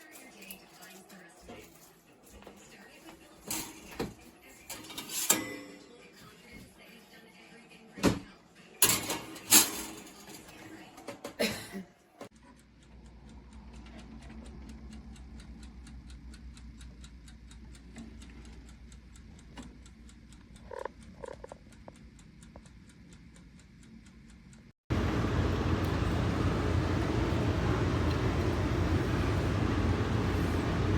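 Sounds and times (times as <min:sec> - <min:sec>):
clockwork mechanism ticking: 0:12.3 - 0:24.7
loud steady rumbling: 0:24.9 - 0:30.9
low hum: 0:24.9 - 0:30.9.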